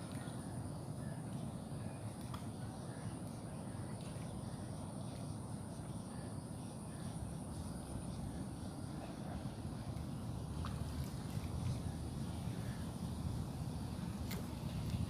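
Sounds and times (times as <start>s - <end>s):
insects trilling: 0.0s - 15.0s
steady low rumble: 0.0s - 15.0s.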